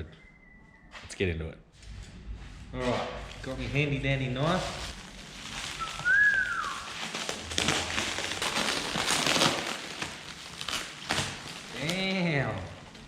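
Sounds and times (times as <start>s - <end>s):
tape and cardboard crackling: 4.3s - 13.0s
knife slicing packing tape: 7.0s - 12.0s.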